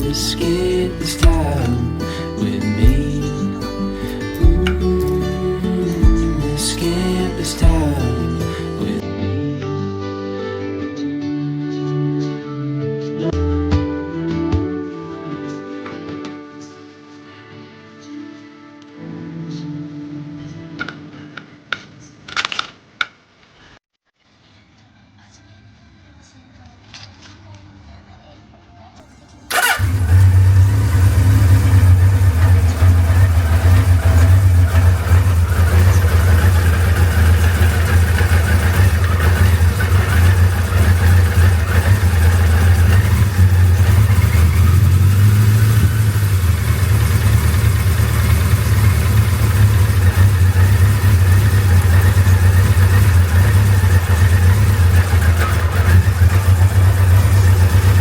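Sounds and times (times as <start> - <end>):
motorcycle engine idling: 0.0 - 9.0, 29.5 - 58.0.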